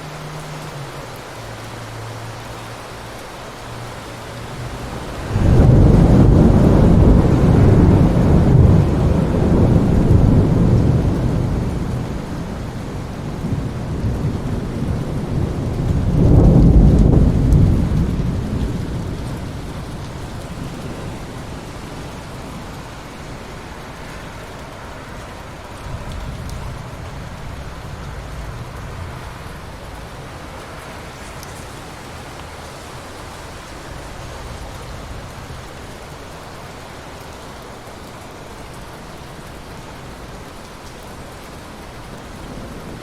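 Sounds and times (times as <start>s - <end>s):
steady rain: 0.0s - 43.0s
low thunder rumble: 4.2s - 23.0s, 25.8s - 31.0s.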